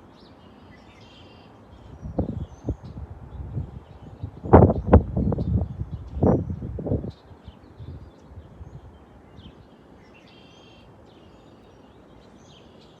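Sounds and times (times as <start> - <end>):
songbirds chirping: 0.0 - 13.0.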